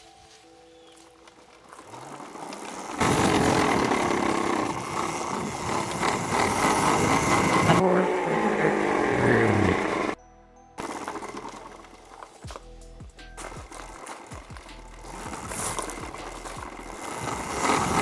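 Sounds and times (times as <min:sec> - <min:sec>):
wind and tyre noise: 0:00.0 - 0:10.2, 0:10.8 - 0:18.0
electric motor tones: 0:00.9 - 0:10.2, 0:10.8 - 0:18.0.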